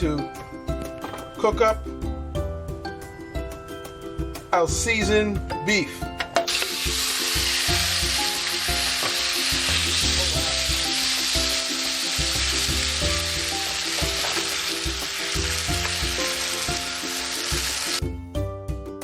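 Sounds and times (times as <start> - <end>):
beef sizzling in a pan: 6.5 - 18.0.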